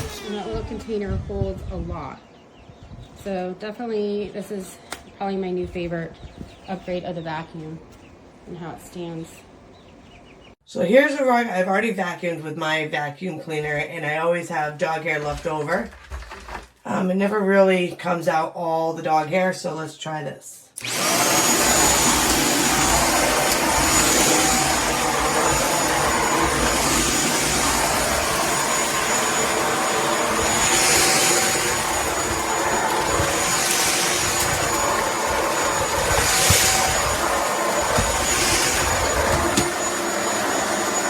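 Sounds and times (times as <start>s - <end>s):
vacuum cleaner running: 20.8s - 41.0s.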